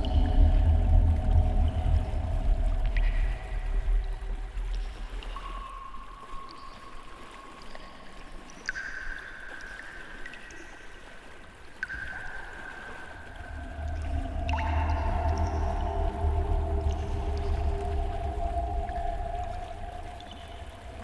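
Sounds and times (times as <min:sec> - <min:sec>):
long held high tone: 0:13.4 - 0:21.0.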